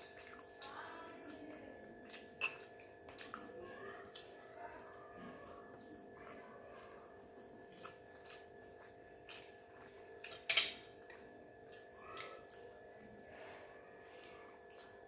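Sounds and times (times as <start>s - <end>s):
cutlery clatter: 2.4s - 2.6s, 10.3s - 10.8s
cutlery clinking on a dish: 2.4s - 2.7s, 10.3s - 10.8s.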